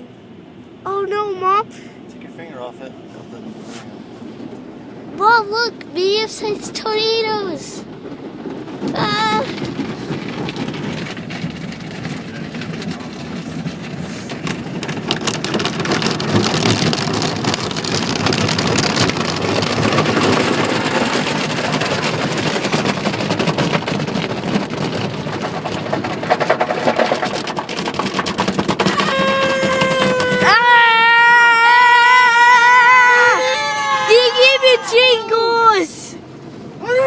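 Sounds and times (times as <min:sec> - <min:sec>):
water spraying on vehicle roof: 0:05.2 - 0:30.7.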